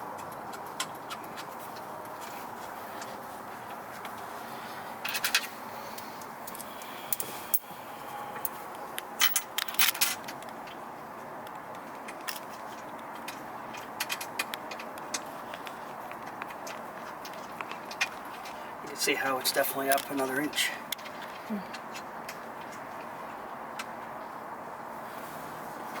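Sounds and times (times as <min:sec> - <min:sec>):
metal bolts and washers clinking: 0:09.2 - 0:10.5.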